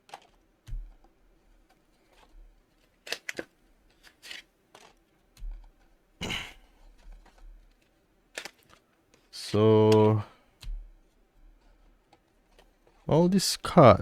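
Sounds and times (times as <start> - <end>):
cards clicking and rustling: 0.0 - 5.9, 6.9 - 13.1.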